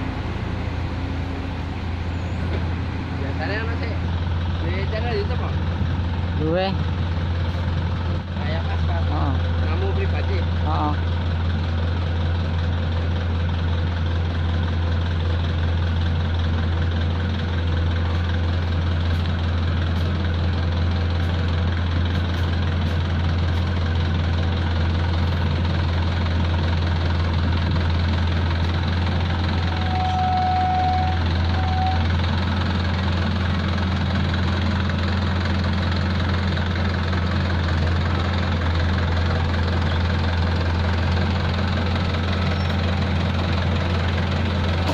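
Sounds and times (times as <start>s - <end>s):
heavy diesel engine drone: 0.0s - 44.9s.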